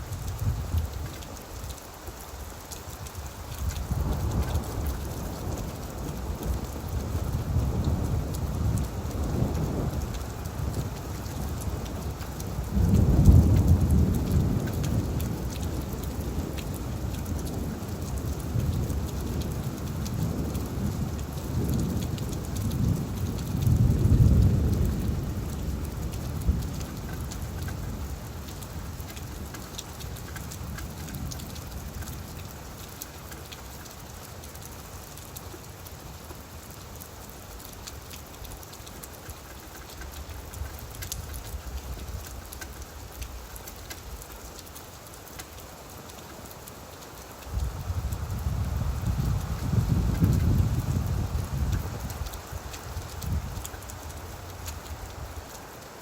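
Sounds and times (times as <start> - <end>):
rain falling on leaves: 0.0 - 56.0
thunder rumbling: 47.5 - 53.6.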